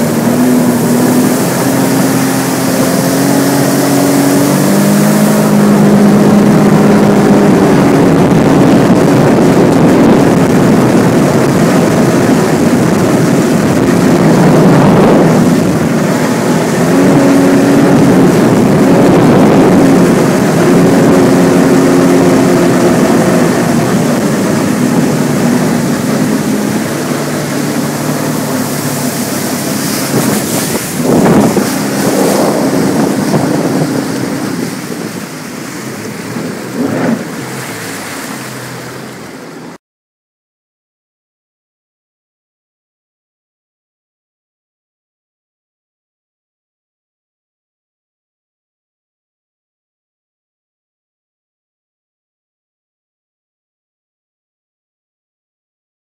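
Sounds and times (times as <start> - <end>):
personal watercraft engine: 0.0 - 39.8
rush of wind and water: 0.0 - 39.8.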